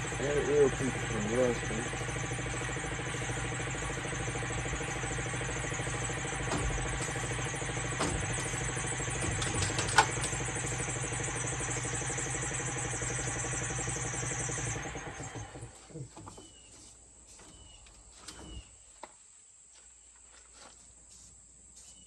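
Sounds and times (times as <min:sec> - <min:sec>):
machine hum: 0:00.0 - 0:15.8
hiss: 0:21.1 - 0:22.0.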